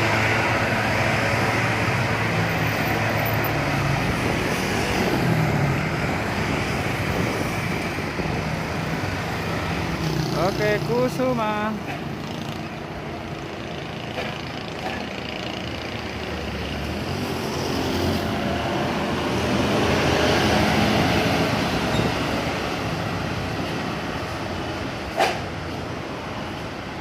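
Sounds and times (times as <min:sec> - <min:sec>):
bus passing: 0:00.0 - 0:27.0.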